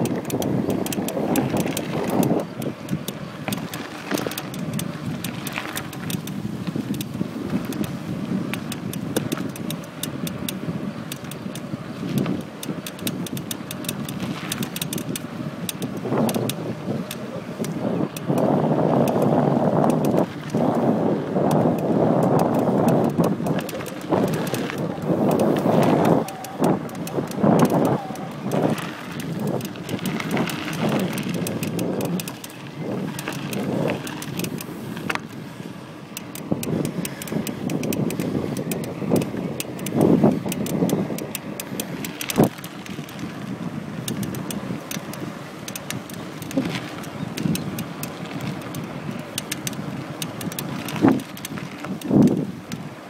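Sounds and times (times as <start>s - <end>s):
bicycle creaking and clicking: 0.0s - 53.0s
tyres and wind rumble: 0.0s - 53.0s.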